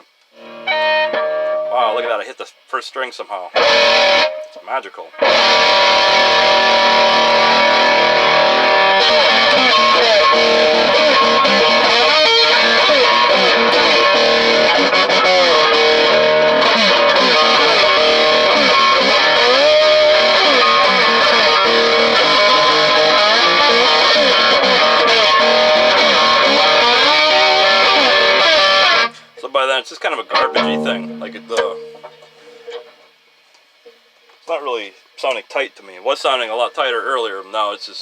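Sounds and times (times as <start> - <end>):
distorted electric guitar bends: 0.0 - 2.3, 3.5 - 33.2.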